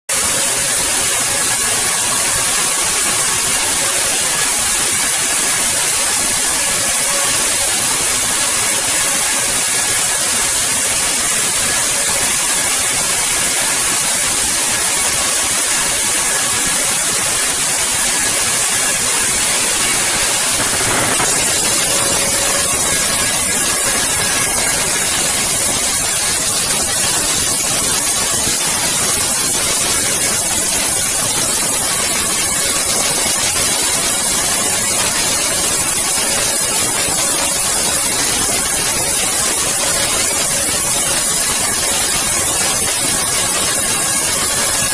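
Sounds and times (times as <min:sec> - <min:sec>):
sawmill machinery hissing: 0:00.2 - 0:32.5.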